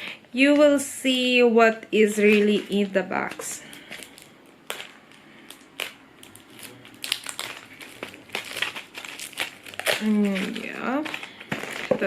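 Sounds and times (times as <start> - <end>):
plastic bags crinkling: 2.1 - 12.0
small boxes rustling: 6.3 - 12.0.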